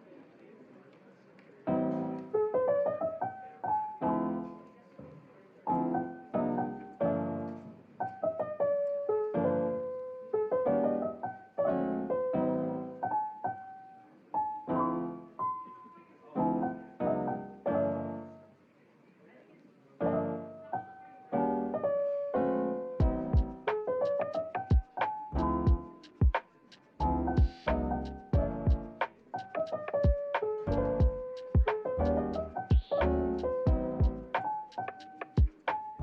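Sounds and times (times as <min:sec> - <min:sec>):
gentle piano piece: 0:01.5 - 0:18.7, 0:19.9 - 0:36.0.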